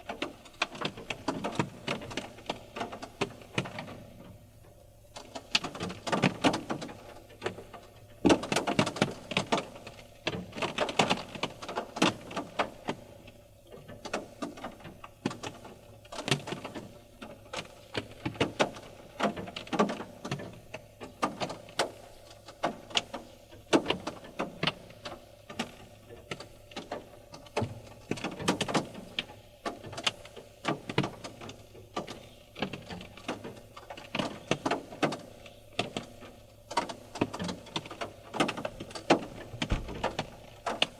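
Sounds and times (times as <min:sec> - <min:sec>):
raindrops tapping on car: 0:30.1 - 0:40.9.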